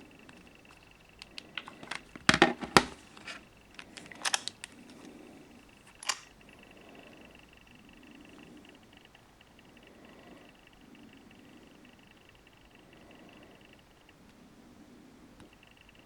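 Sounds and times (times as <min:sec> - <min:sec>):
phone being handled: 0:00.2 - 0:06.5
faint steady high tone: 0:04.6 - 0:16.0.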